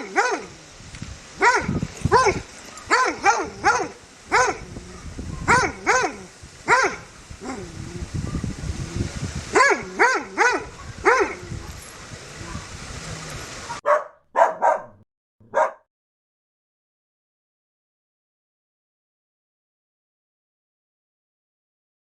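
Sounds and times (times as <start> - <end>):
dog barking aggressively: 0.0 - 0.5, 1.4 - 7.1, 9.5 - 11.4, 13.7 - 15.9
low rumbling: 0.4 - 13.8.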